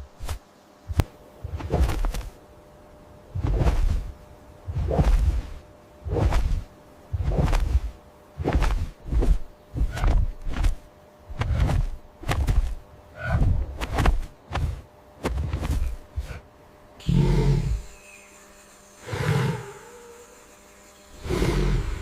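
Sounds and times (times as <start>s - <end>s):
heavy deep thuds: 3.4s - 16.4s.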